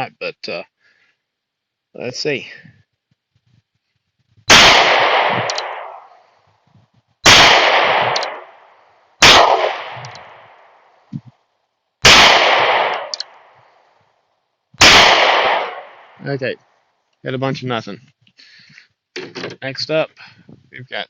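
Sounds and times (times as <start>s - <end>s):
revolver gunshots: 4.5s - 6.2s, 7.2s - 10.8s, 12.0s - 13.6s, 14.8s - 16.2s.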